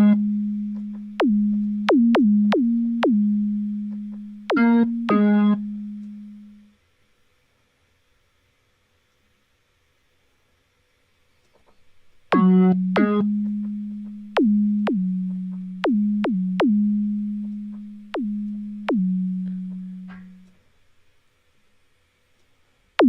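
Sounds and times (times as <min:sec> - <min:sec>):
low synthesizer notes: 0:00.0 - 0:06.7, 0:12.4 - 0:20.5.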